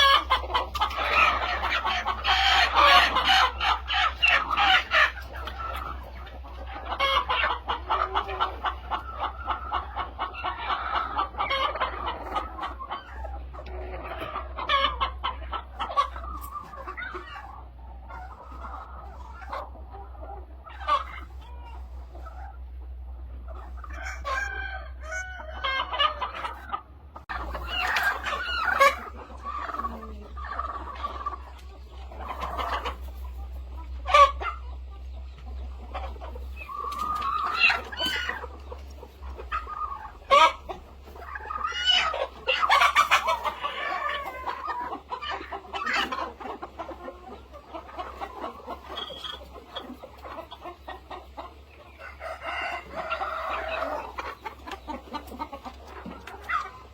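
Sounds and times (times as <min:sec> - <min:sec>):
chickens clucking: 0:00.0 - 0:56.9
rooster crowing: 0:24.0 - 0:25.5, 0:52.0 - 0:53.7.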